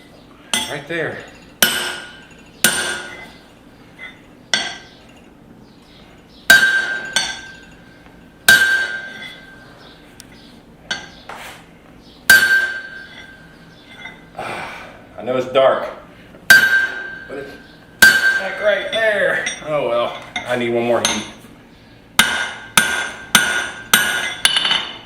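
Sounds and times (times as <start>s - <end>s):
hammer striking metal punch: 0.5s - 3.4s, 4.0s - 5.0s, 6.5s - 7.8s, 8.4s - 9.6s, 10.9s - 11.2s, 12.3s - 14.2s, 16.5s - 17.4s, 18.0s - 21.4s, 22.2s - 25.0s.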